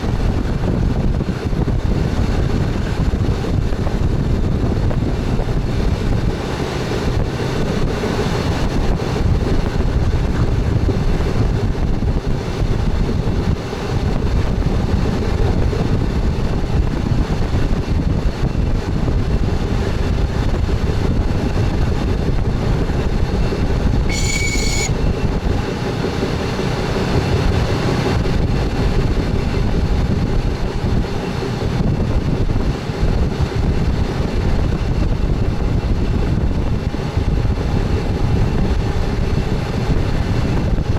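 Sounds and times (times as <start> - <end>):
short high beep: 24.1 - 25.0.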